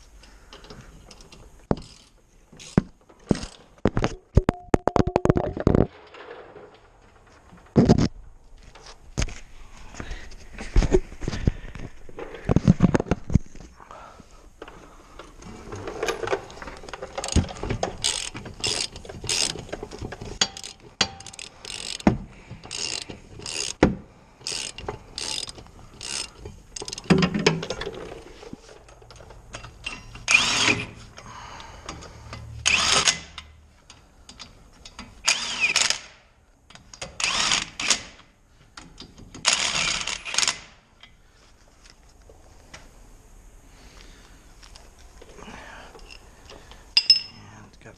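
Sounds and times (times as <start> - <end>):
socket ratchet clicking: 18.0 - 19.6, 20.4 - 22.1, 22.7 - 23.8, 24.4 - 27.1.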